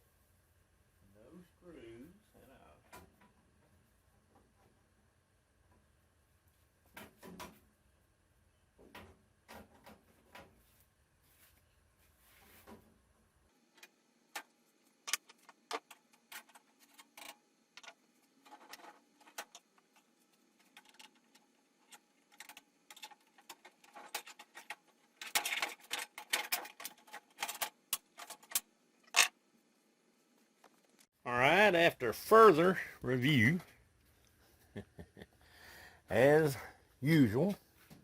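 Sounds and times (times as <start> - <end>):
metal parts clicking and clinking: 20.6 - 29.4.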